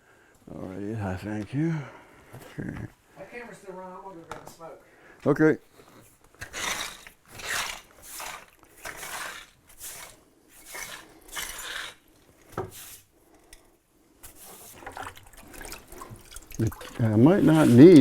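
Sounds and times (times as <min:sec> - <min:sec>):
broom sweeping brick: 0:05.9 - 0:13.1, 0:14.2 - 0:14.9, 0:17.3 - 0:18.0.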